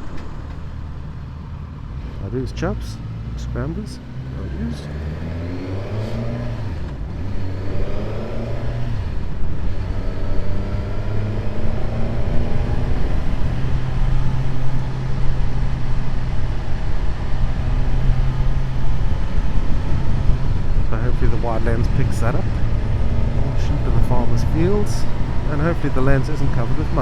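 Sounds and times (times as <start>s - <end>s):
motorcycle engine accelerating: 3.5s - 27.0s.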